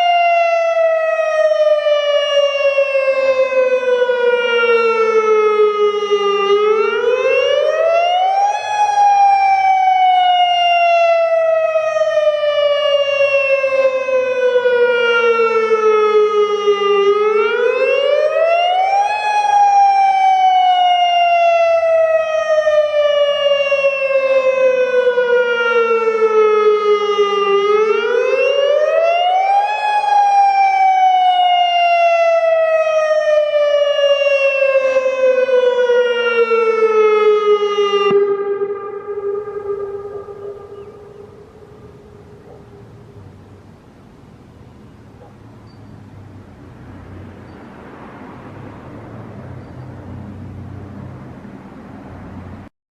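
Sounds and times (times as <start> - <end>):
warning siren wailing: 0.0 - 52.7.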